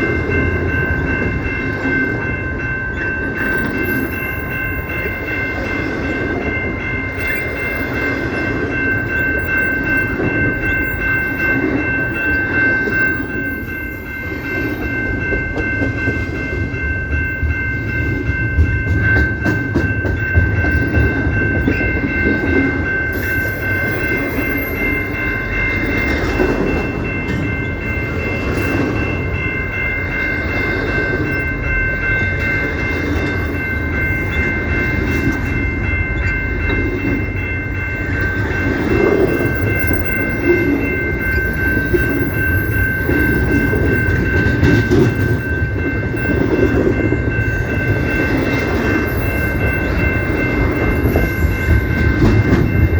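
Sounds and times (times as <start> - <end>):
steady high ringing tone: 0.0 - 52.9
train wheels rumbling on rails: 0.0 - 52.9.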